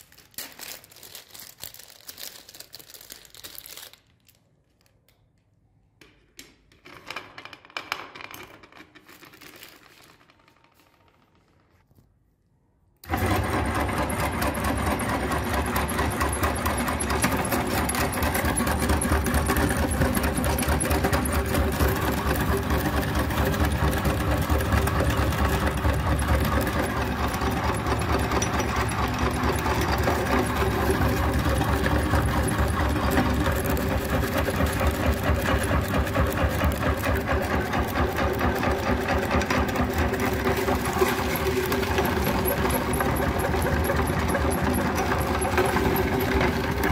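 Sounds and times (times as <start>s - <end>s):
meat grinder motor hum: 13.0s - 46.9s.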